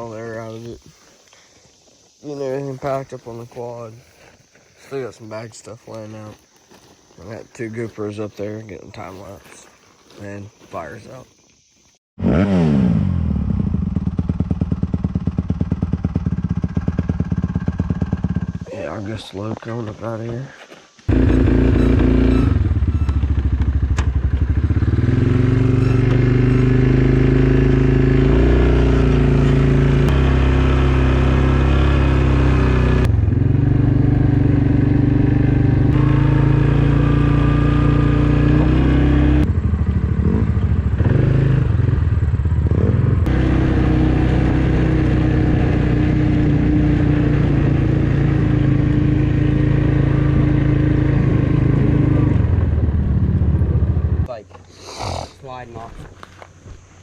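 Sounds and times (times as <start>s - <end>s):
quad engine running: 12.2s - 18.8s, 21.1s - 54.3s.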